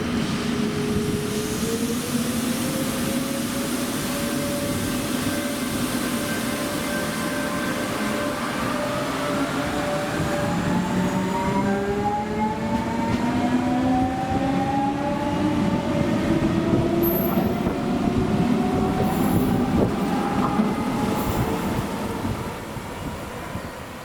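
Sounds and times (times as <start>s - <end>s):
wheel and rail rumble: 7.4s - 24.0s.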